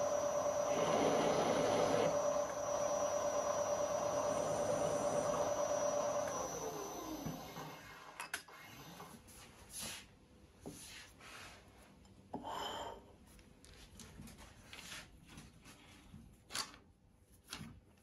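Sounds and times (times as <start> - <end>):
machine motor spinning down: 0.0 - 8.0.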